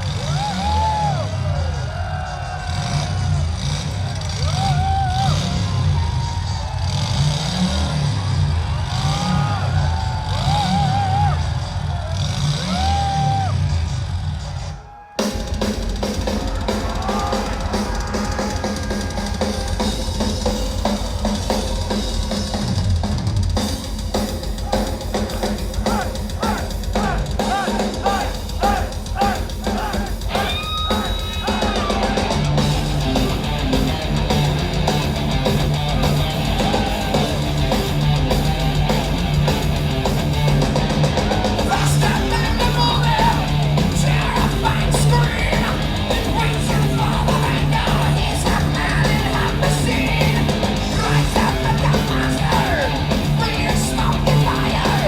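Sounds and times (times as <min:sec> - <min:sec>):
drum kit playing fast: 0:00.0 - 0:55.0
electric guitars riff: 0:15.2 - 0:55.0.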